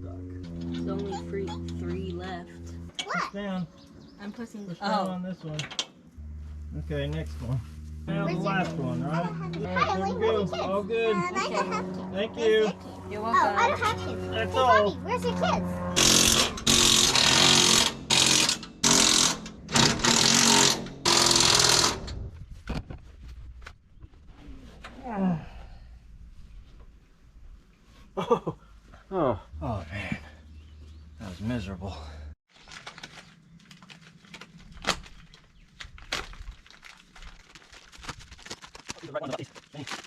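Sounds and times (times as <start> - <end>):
impact wrench bursts: 16.0 - 22.1.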